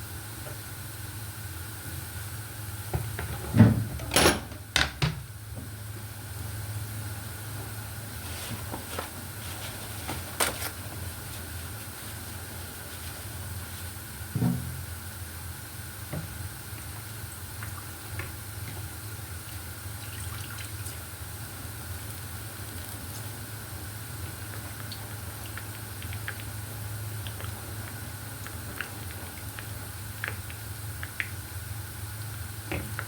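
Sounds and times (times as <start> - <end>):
kitchen clicks and clatter: 3.2 - 5.2.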